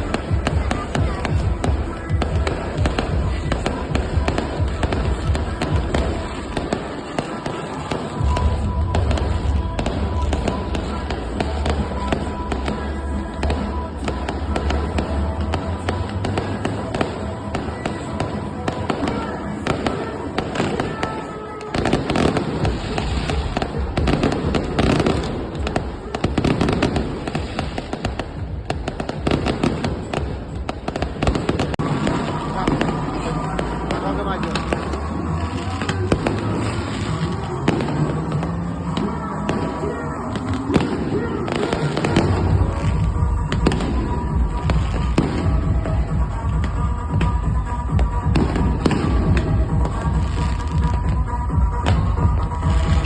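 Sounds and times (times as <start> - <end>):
fireworks cracking and popping: 0.0 - 53.0
music playing: 0.0 - 53.0.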